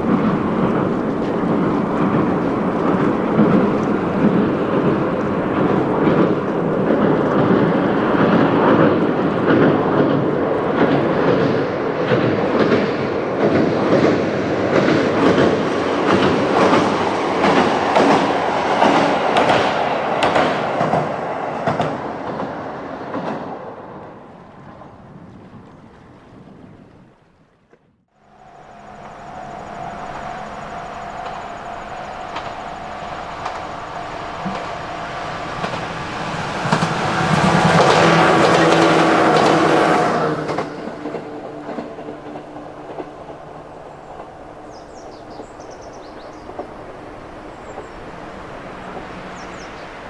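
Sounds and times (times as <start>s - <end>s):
wheels clacking over rail joints: 0.0s - 25.6s, 28.3s - 50.0s
diesel railcar passing: 0.0s - 27.4s, 28.1s - 50.0s.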